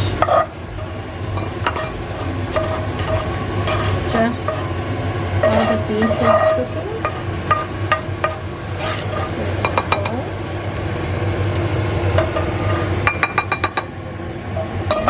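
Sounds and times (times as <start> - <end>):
utensils and dishes clinking: 0.0 - 6.6, 12.8 - 14.1.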